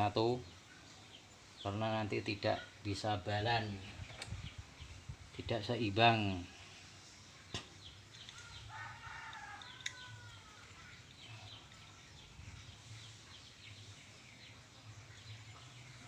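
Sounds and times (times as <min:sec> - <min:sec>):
small birds chirping: 0:00.0 - 0:16.0
rooster crowing: 0:08.3 - 0:10.7.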